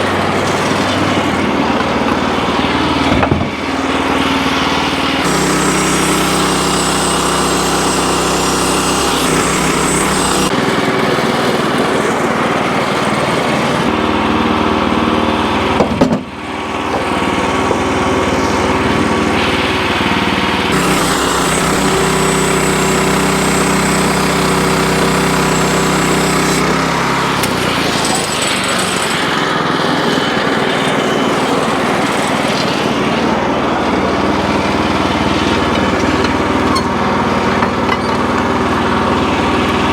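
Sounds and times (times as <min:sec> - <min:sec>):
band sawmill sawing wood: 0:00.0 - 0:39.9.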